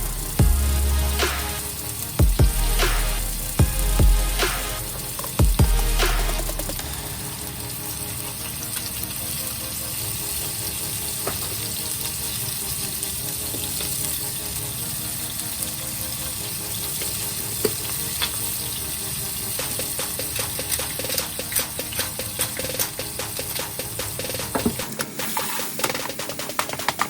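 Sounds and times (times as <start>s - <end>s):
food sizzling in a frying pan: 1.5s - 2.2s, 6.8s - 24.6s.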